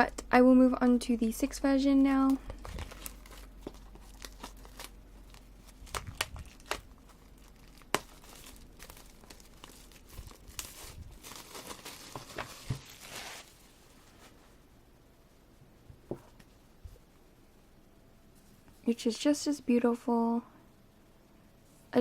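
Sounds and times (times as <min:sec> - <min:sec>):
packaging crinkling and rustling: 0:02.1 - 0:14.3.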